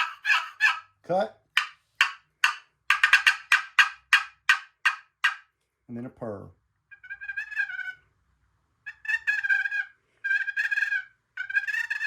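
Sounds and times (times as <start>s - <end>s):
turkey box call purring: 0.0s - 0.9s, 1.6s - 5.4s, 6.9s - 8.0s, 8.9s - 12.0s.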